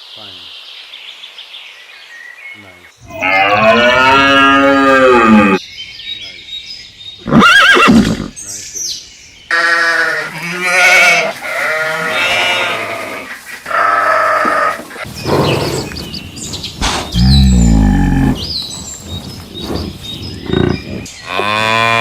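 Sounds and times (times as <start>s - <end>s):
farm animals calling: 2.6s - 22.0s
deep falling animal call: 3.0s - 5.6s, 16.8s - 18.5s.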